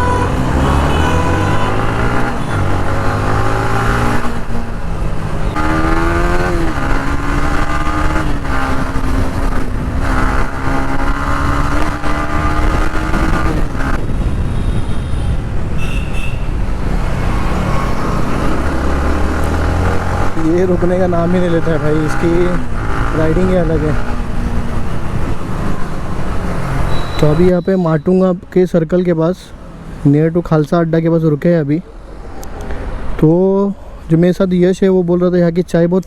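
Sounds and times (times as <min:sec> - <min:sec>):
motorcycle engine accelerating: 0:00.0 - 0:14.1, 0:16.7 - 0:27.6
high beep: 0:26.9 - 0:28.3.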